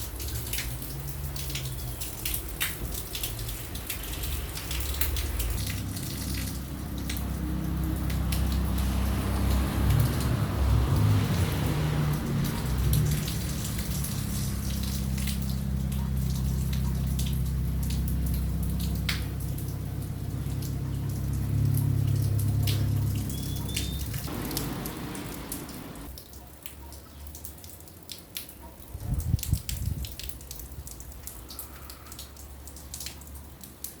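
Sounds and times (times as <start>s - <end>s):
vehicle engine rumble: 0.0s - 26.2s
light rain dripping on hard surfaces: 0.0s - 34.0s.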